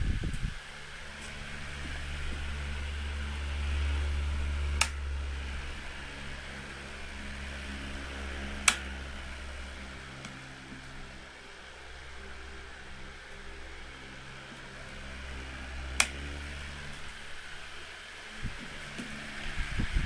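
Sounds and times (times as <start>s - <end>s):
floor fan running: 0.0s - 20.0s
sharp clicks: 4.6s - 5.1s, 8.5s - 9.3s, 16.0s - 16.3s.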